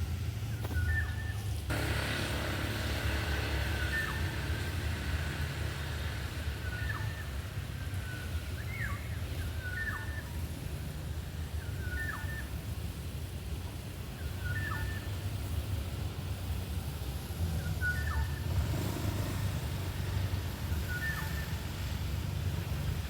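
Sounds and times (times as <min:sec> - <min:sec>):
steady low rumble: 0:00.0 - 0:11.8
bird call with downward slur: 0:00.5 - 0:12.8, 0:14.1 - 0:15.4, 0:17.5 - 0:21.9.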